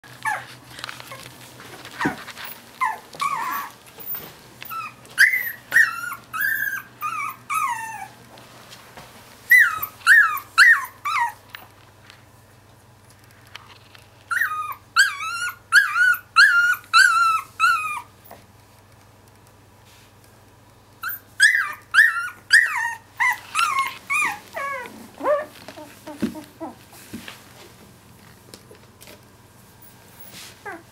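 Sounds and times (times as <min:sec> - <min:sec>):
puppy whining squeals: 0:00.2 - 0:00.6, 0:02.0 - 0:08.2, 0:09.5 - 0:11.4, 0:14.3 - 0:18.1, 0:21.0 - 0:26.8, 0:30.6 - 0:30.9.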